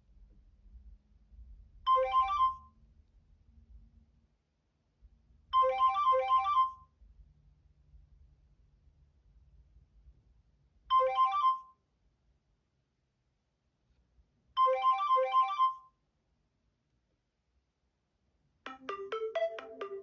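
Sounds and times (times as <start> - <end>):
phone alert tone: 1.9 - 2.6, 5.6 - 6.7, 14.6 - 15.8, 18.7 - 20.0.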